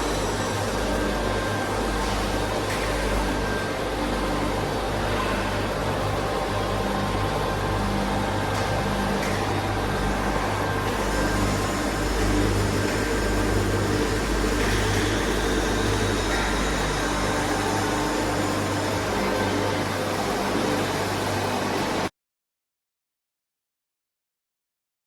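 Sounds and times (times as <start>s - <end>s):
lathe running: 0.0s - 22.1s.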